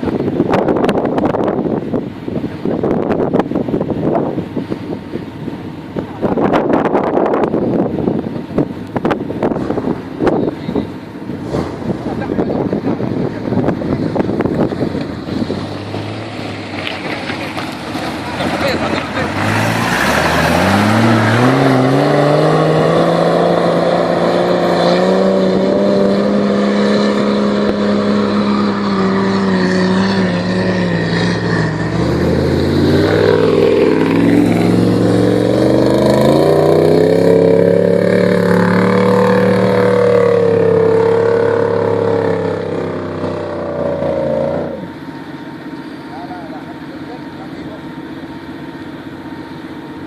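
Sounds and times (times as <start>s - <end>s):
engine revving at high revs: 11.4s - 12.6s, 18.2s - 48.6s.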